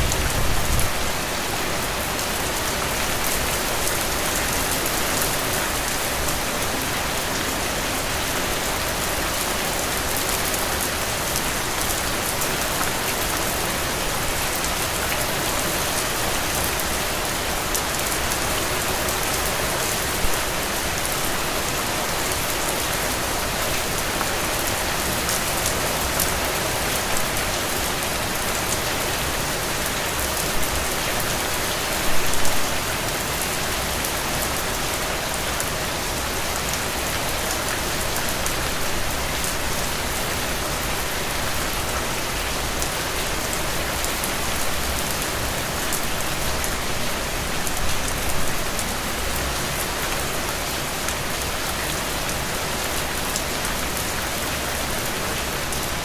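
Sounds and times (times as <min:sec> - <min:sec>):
heavy rain falling: 0:00.0 - 0:56.0
loud nearby raindrops: 0:00.0 - 0:56.0.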